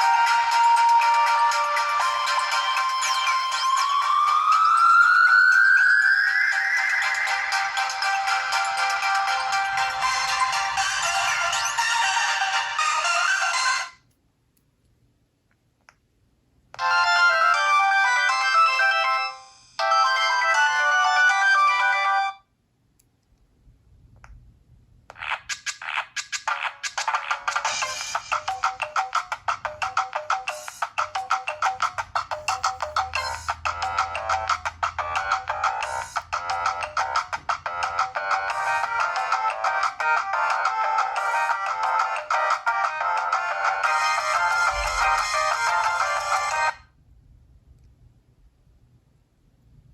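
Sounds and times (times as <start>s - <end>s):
phone ringtone melody: 0.0s - 13.9s, 16.8s - 22.4s, 27.6s - 46.8s.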